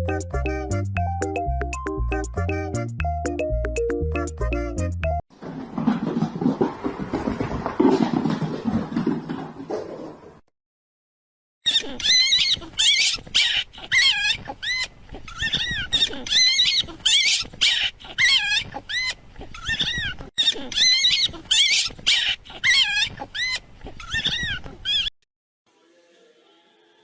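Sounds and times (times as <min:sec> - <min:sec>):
high-pitched animal cries: 0:11.7 - 0:25.1.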